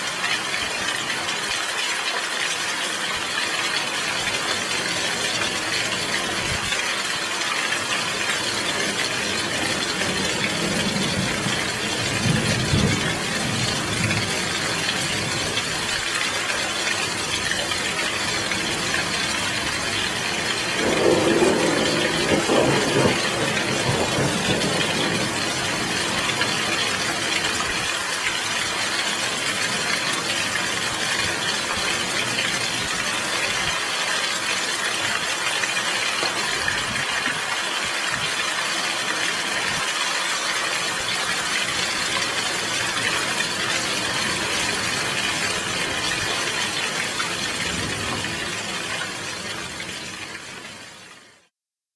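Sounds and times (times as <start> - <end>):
heavy rain hiss: 0.0 - 50.3
low rumble of thunder: 9.7 - 15.4, 19.6 - 27.4.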